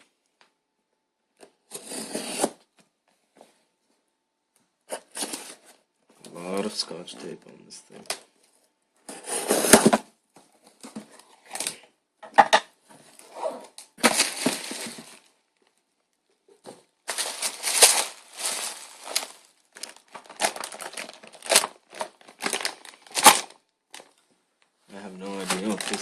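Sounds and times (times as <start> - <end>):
packaging crinkling: 14.0 - 15.3, 17.0 - 24.2, 25.2 - 26.0.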